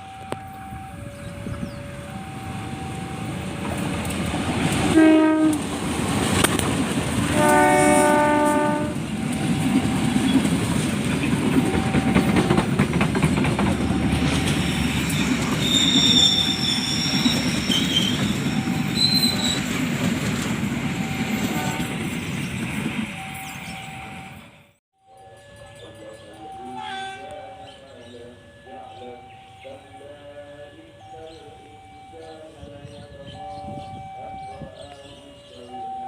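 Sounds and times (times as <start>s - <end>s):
train cars rumbling over rail joints: 0.4s - 24.5s
train horn blast: 4.7s - 5.8s, 7.2s - 10.4s, 21.3s - 22.0s, 26.7s - 27.4s
high wheel squeals: 13.8s - 19.8s.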